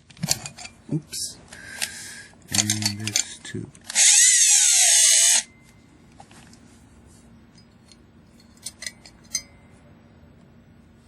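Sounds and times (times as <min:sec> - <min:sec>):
faint steady hum: 0:00.0 - 0:11.0
small metal parts clinking: 0:02.5 - 0:05.4, 0:07.5 - 0:09.6.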